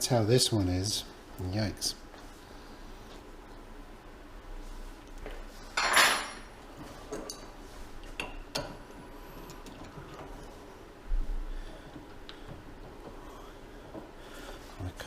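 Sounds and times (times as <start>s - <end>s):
metal tools clattering: 5.8s - 6.5s.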